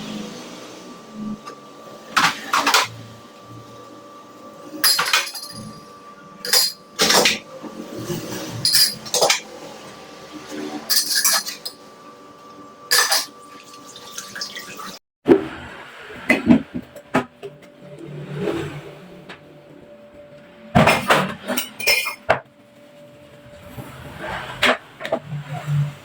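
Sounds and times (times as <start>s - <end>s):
dishes and glassware clinking: 4.8s - 5.7s, 6.5s - 7.4s, 8.6s - 9.5s, 10.9s - 11.8s, 12.9s - 13.4s, 20.8s - 22.4s.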